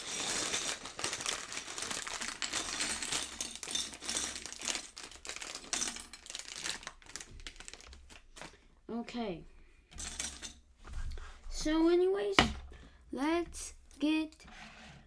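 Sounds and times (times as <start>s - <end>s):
plastic bags crinkling: 0.0s - 8.6s.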